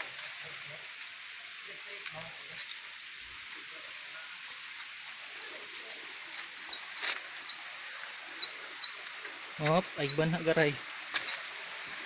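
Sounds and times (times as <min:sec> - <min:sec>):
background hiss: 0:00.0 - 0:12.0
small animal chirping: 0:04.0 - 0:11.0.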